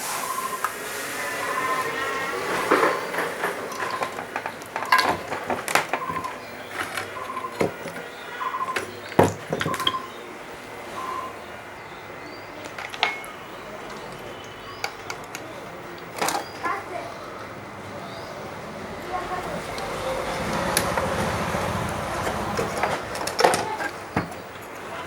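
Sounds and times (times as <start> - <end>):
metal tools clinking: 12.6 - 16.7.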